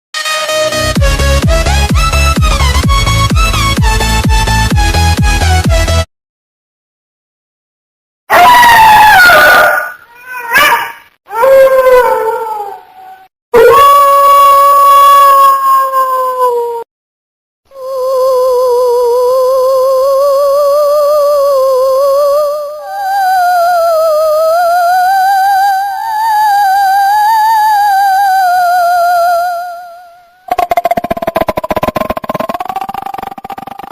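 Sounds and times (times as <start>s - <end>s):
wavering ghost wail: 8.3s - 16.8s.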